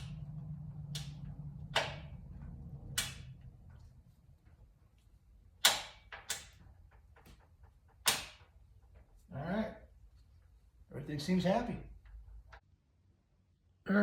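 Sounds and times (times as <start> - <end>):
low hum: 0.0 - 5.6.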